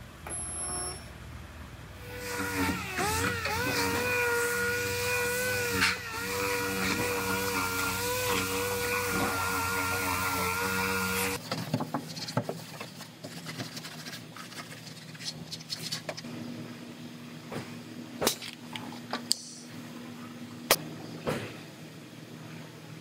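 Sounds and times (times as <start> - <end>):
power tool whining: 2.0 - 11.4.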